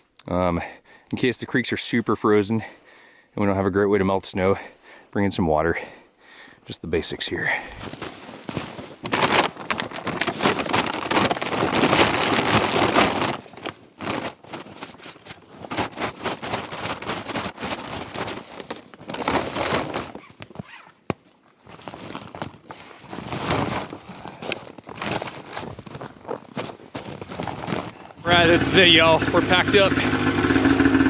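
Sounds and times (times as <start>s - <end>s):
gear rustling and crinkling: 6.6s - 28.4s.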